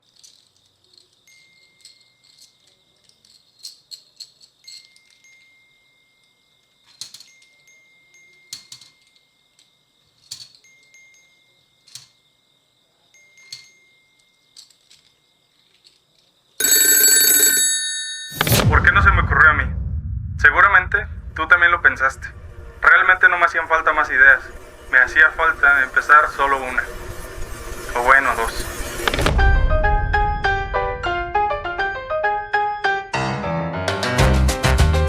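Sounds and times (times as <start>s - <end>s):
loud ringing of held tones: 1.2s - 3.1s, 4.6s - 15.5s, 16.6s - 18.6s
high-pitched whine: 18.4s - 32.5s.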